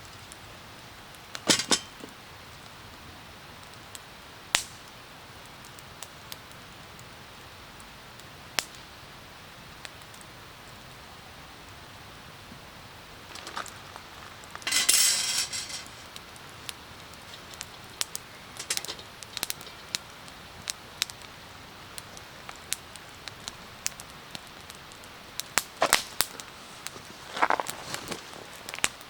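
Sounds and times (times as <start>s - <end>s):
campfire crackling and popping: 0.0s - 29.0s
rustling burst: 13.3s - 20.0s.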